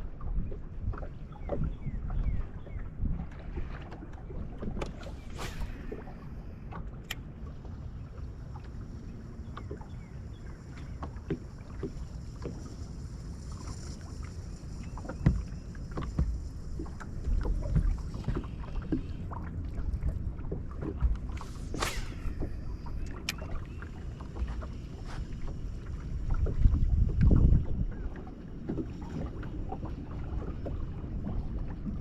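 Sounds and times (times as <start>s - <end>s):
water and wind around hull: 0.0s - 32.0s
brief whoosh: 5.0s - 6.8s, 21.4s - 23.0s.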